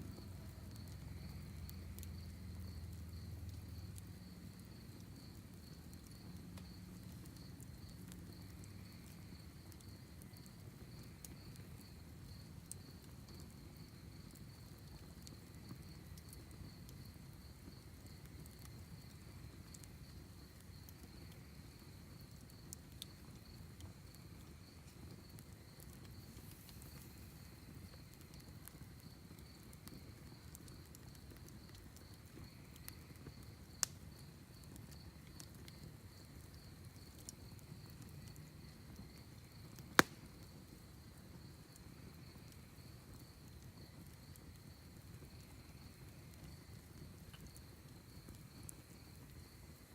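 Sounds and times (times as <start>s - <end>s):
campfire crackling: 0.0s - 49.9s
sharp fire pops: 39.5s - 40.5s.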